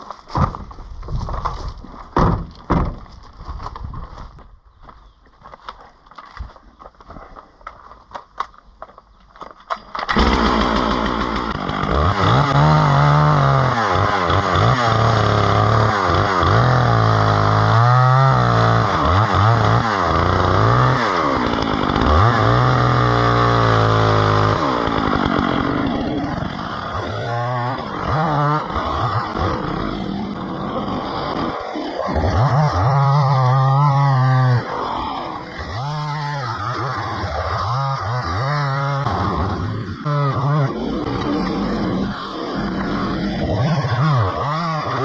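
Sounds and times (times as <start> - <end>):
chainsaw cutting: 10.0 - 45.0.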